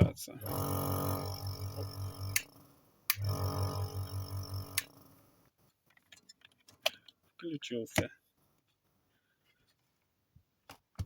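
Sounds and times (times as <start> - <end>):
compressor humming: 0.4 - 5.3.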